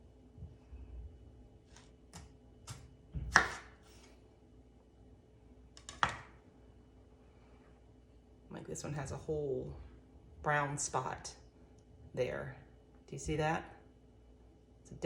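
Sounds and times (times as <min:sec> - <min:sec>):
knife cutting potatoes: 0:01.7 - 0:04.1, 0:05.8 - 0:06.3.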